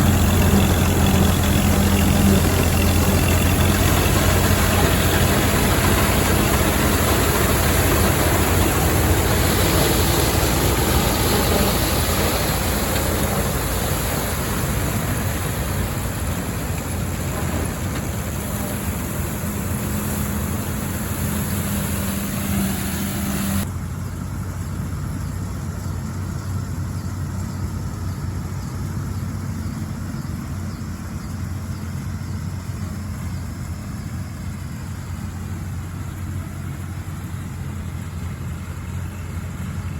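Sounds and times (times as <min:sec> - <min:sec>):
combine machinery rattling: 0:00.0 - 0:23.6
tractor engine running: 0:00.0 - 0:39.9.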